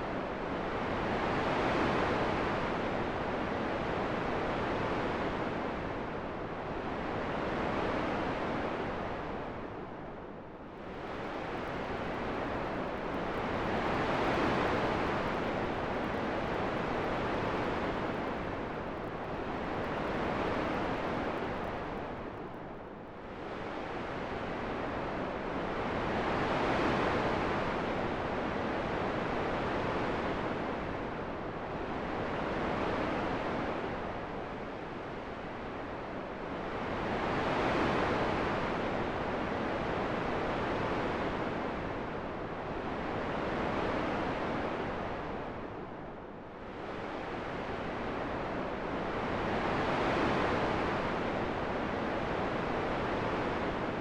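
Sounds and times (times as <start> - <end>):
wind gusts: 9.4 - 25.1.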